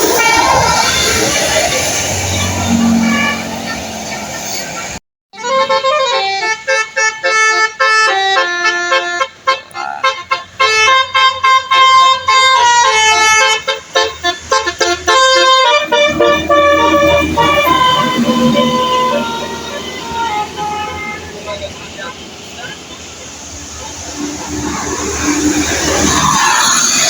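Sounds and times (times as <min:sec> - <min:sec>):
musical air horn tune: 0:00.0 - 0:04.0, 0:05.4 - 0:21.8.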